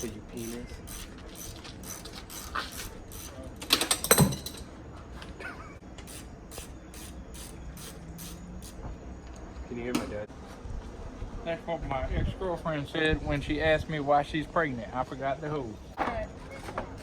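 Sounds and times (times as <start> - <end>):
ratchet wrench clicking: 0.0 - 4.1, 6.0 - 8.8.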